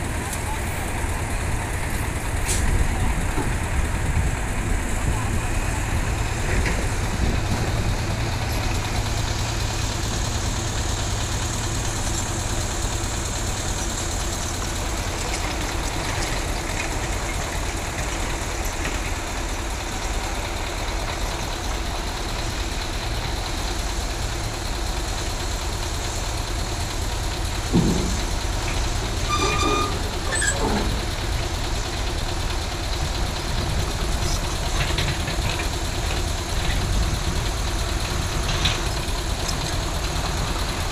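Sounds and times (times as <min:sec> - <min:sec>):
diesel engine running: 0:00.0 - 0:40.9
thump: 0:27.7 - 0:28.2.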